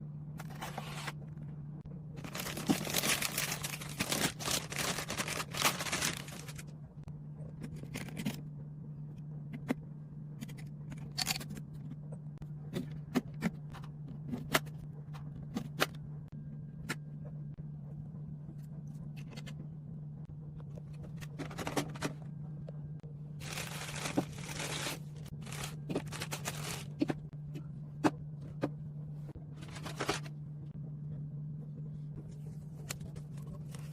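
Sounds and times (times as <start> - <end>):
steady low hum: 0.0 - 33.9
packaging rustling and scraping: 0.4 - 1.2, 2.2 - 6.6, 23.4 - 27.2, 29.6 - 30.3.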